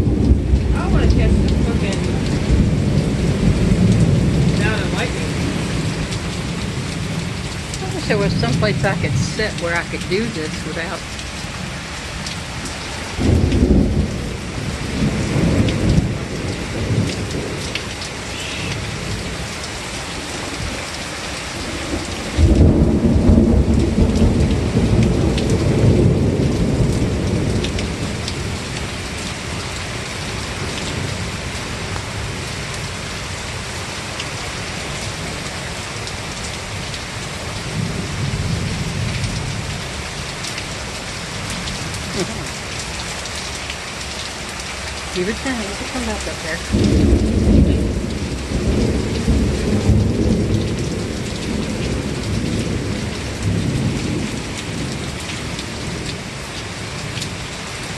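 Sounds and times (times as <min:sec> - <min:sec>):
thunder rumbling: 0:00.0 - 0:19.6, 0:21.6 - 0:29.7, 0:34.9 - 0:40.6, 0:45.2 - 0:56.3
heavy rain hissing: 0:00.0 - 0:57.9.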